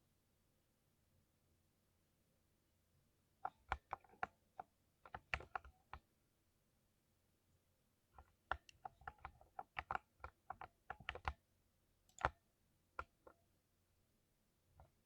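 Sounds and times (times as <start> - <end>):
computer keyboard typing: 3.4 - 6.0, 8.2 - 11.4, 12.1 - 12.4.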